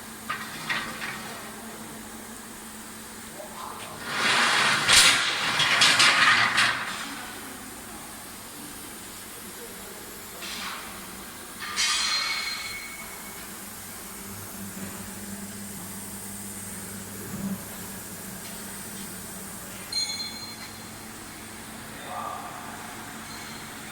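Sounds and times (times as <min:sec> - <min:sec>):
welding machine electrical hum: 0:00.0 - 0:23.9
metallic ring: 0:11.6 - 0:13.4, 0:19.9 - 0:20.8, 0:23.2 - 0:23.8.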